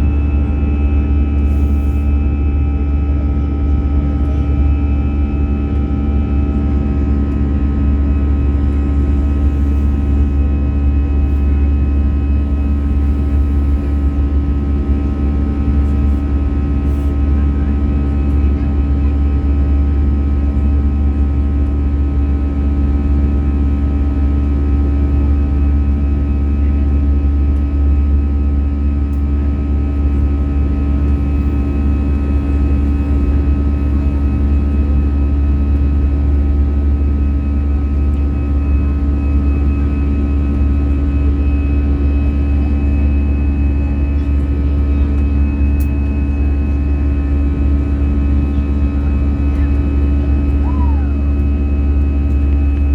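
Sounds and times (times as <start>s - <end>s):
jet engine cabin drone: 0.0s - 52.9s
constant whining tones: 28.8s - 52.9s.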